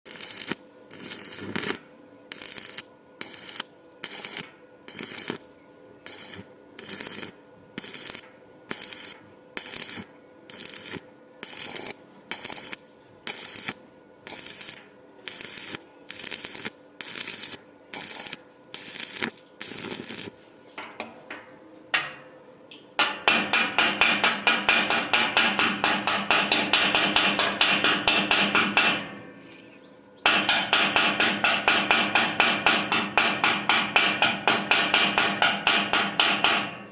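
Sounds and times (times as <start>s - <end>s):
arc welding crackle: 0.1s - 20.4s.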